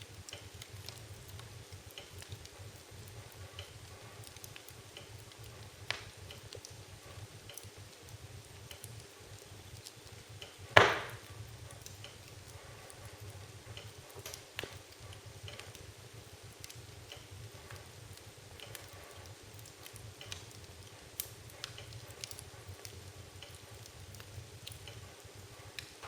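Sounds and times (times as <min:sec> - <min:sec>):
firewood crackling: 0:00.0 - 0:26.0
loud sharp pop: 0:10.8 - 0:11.2.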